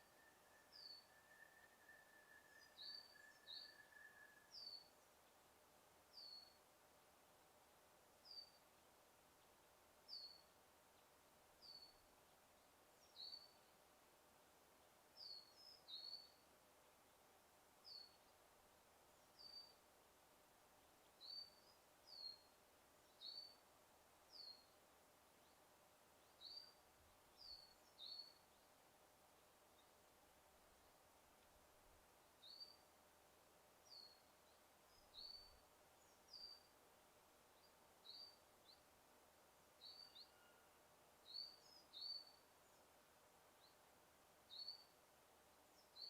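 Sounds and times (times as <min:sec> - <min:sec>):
bird chirping: 0:00.0 - 0:05.2, 0:32.4 - 0:32.8, 0:33.8 - 0:36.7, 0:37.6 - 0:38.9, 0:39.8 - 0:42.9, 0:44.5 - 0:44.9
faint steady hiss: 0:00.0 - 0:46.0.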